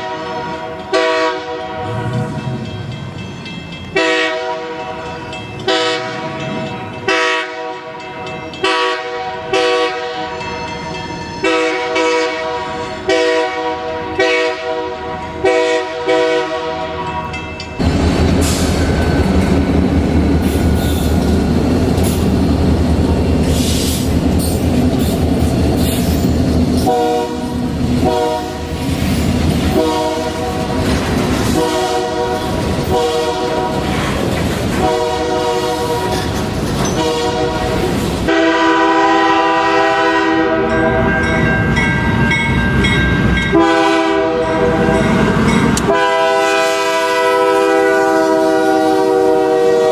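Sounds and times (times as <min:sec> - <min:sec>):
train air horn blasts: 0:00.0 - 0:02.3, 0:04.0 - 0:05.1, 0:05.7 - 0:06.4, 0:07.0 - 0:08.0, 0:08.6 - 0:10.5, 0:11.4 - 0:17.2, 0:26.8 - 0:28.8, 0:29.7 - 0:30.8, 0:31.4 - 0:33.9, 0:34.8 - 0:36.3, 0:36.9 - 0:41.2, 0:43.5 - 0:49.9
diesel locomotive rumbling: 0:00.0 - 0:49.9
wheel and rail clatter: 0:17.3 - 0:27.0, 0:27.6 - 0:35.0, 0:35.8 - 0:38.2.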